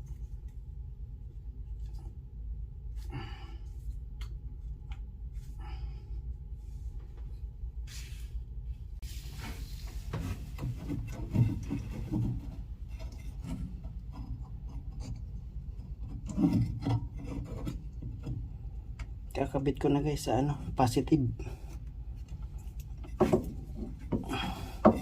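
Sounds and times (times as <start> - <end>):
steady low hum: 0.0 - 25.0
hands scraping and rubbing wires: 9.0 - 19.3.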